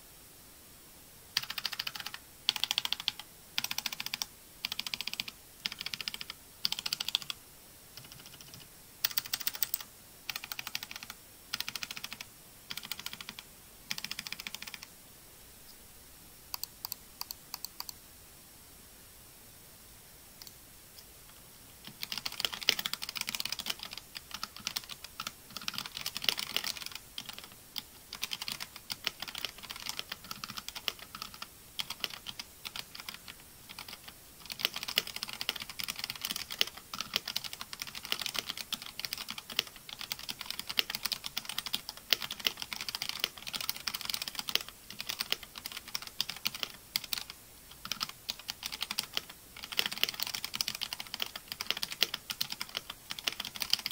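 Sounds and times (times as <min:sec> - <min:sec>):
mechanical keyboard typing: 0:01.4 - 0:07.4, 0:08.0 - 0:14.9, 0:21.8 - 0:53.9.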